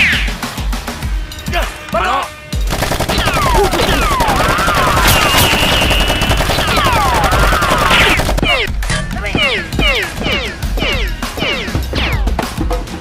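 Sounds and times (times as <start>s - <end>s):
machine-gun fire: 2.7s - 8.7s.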